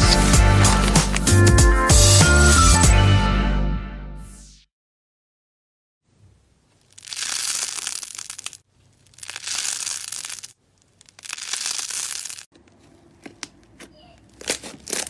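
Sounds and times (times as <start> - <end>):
slime squeezed and crackling: 6.8 - 12.5.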